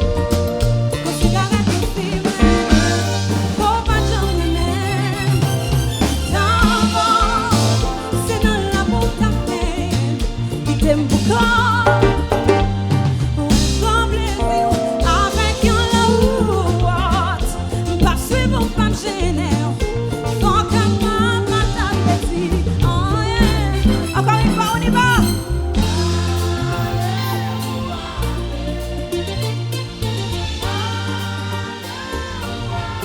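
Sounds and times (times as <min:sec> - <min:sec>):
heavy bass line: 0:00.0 - 0:33.0
live band playing: 0:00.0 - 0:33.0
person singing with vibrato: 0:00.0 - 0:33.0.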